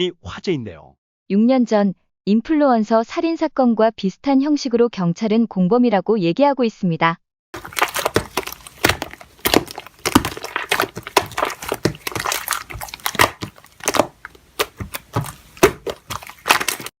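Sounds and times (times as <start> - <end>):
slime crackling and popping: 7.6 - 17.0.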